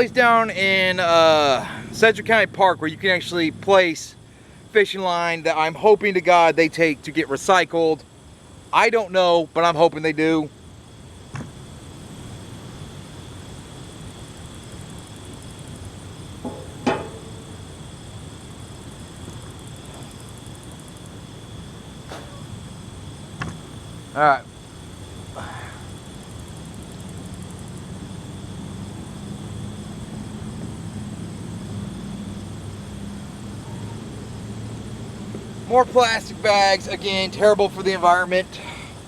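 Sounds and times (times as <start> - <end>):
insects chirring: 0.0 - 39.0
low background hum: 0.0 - 39.0
low steady rumble: 8.0 - 39.0
sharp knock: 11.3 - 11.6, 16.4 - 17.7.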